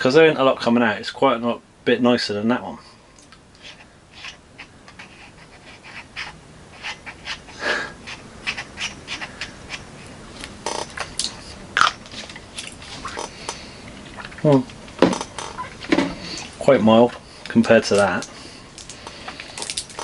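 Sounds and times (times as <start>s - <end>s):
person sniffing: 7.5s - 8.1s.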